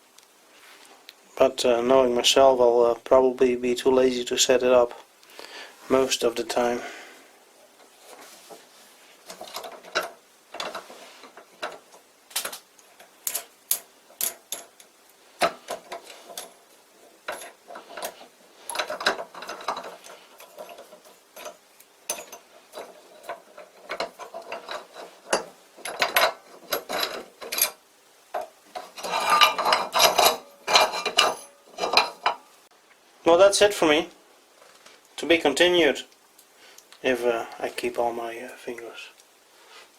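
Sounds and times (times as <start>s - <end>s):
steel parts clicking and clanking: 9.2s - 32.4s.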